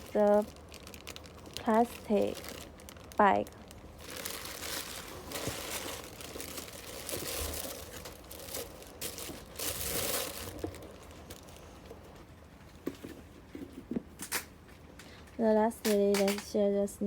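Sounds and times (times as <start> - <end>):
plastic bag crinkling: 0.0 - 12.2.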